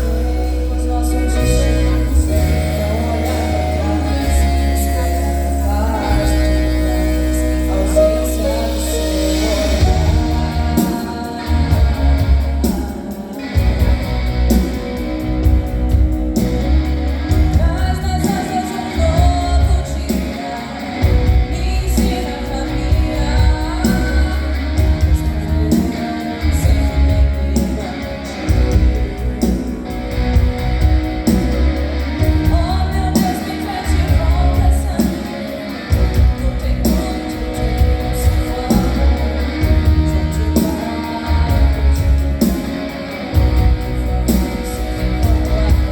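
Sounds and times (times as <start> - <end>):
rock band playing: 0.0 - 45.9
girl singing lead: 17.3 - 29.9.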